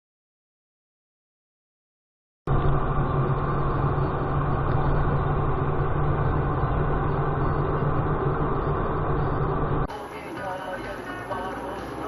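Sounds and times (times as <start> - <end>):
vehicle engine humming: 2.5 - 12.0.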